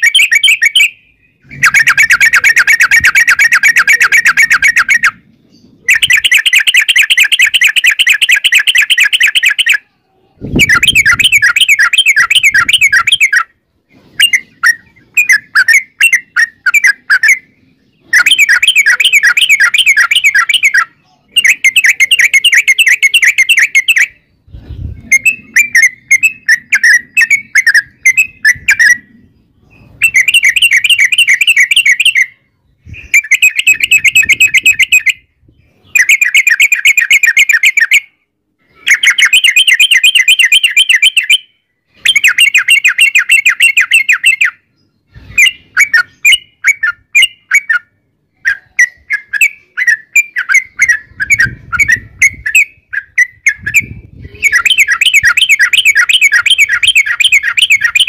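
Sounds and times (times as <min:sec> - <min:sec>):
bird singing rapid chirps: 0:00.0 - 0:58.0.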